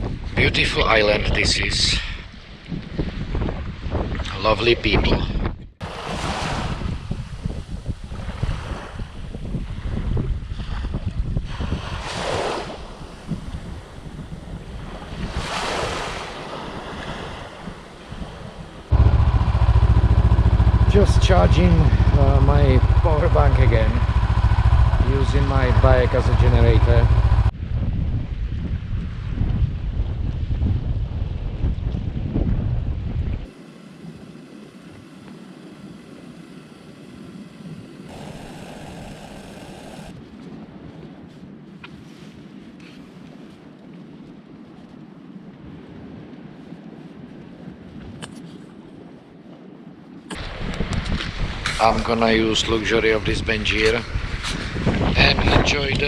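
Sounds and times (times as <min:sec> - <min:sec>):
wind buffeting microphone: 0:00.0 - 0:56.0
sea waves washing in: 0:05.8 - 0:09.9, 0:11.4 - 0:20.9, 0:33.5 - 0:40.2
motorcycle engine starting: 0:18.9 - 0:27.5, 0:33.5 - 0:40.2.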